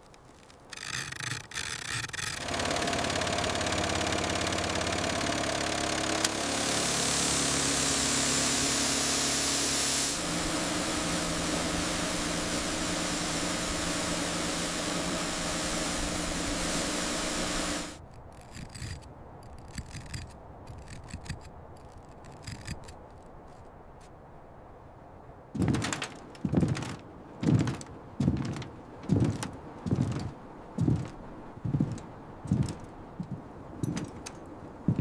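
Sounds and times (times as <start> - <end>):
faint clicks and rustling: 0.0 - 6.4, 15.8 - 24.2, 25.6 - 35.0
engine running: 0.9 - 18.0
loud hiss: 6.0 - 18.0.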